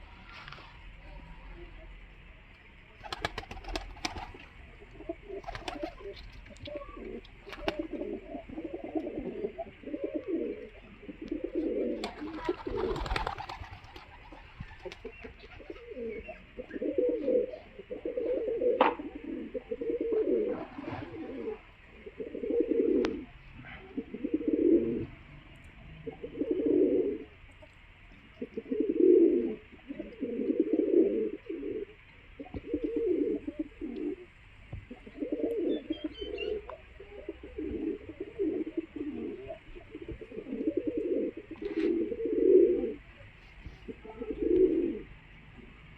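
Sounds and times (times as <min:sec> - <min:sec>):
pigeons cooing: 0:03.0 - 0:45.9.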